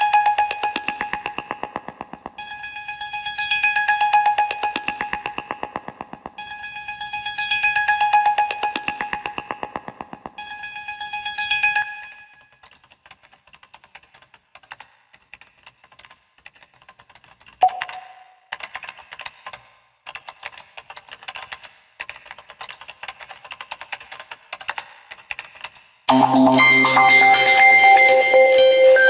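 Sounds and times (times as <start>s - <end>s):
smartphone clicks and taps: 17.6s - 18.3s
brief tone: 17.6s - 18.4s.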